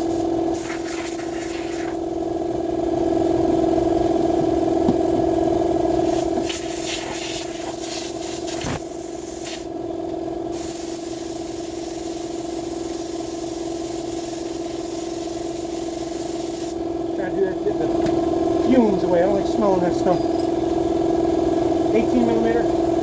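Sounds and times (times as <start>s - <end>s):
hissing spray: 0.0s - 2.2s, 6.0s - 9.7s, 10.5s - 16.8s
motor humming: 6.0s - 9.8s.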